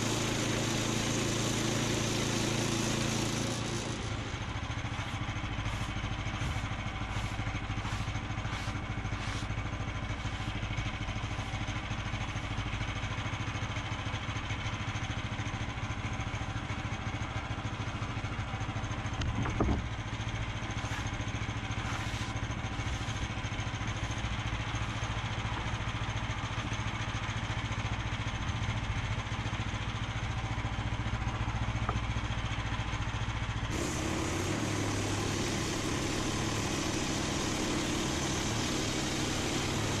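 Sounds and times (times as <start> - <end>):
sawmill engine running: 0.0 - 40.0.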